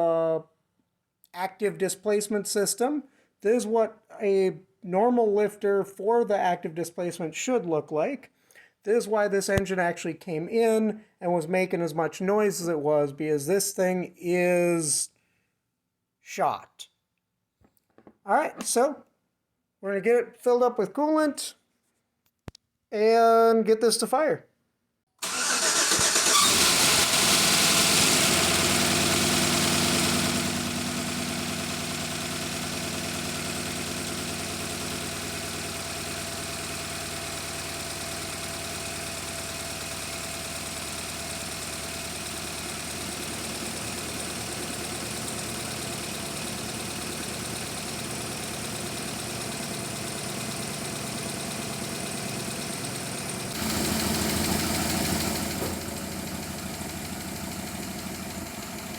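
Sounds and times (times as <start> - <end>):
car engine idling: 25.2 - 58.9.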